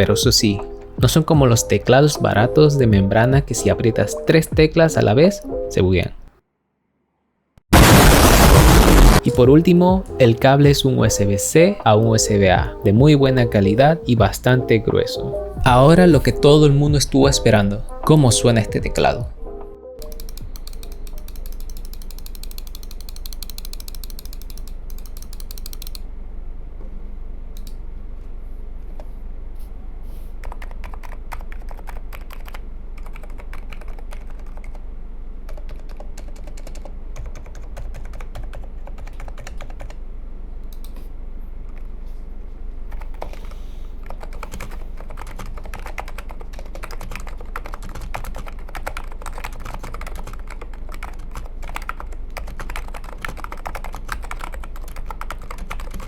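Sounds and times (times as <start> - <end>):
steady low hum: 7.8 - 56.0
typing on a keyboard: 20.0 - 26.0, 30.4 - 34.8, 35.5 - 40.0, 44.0 - 56.0.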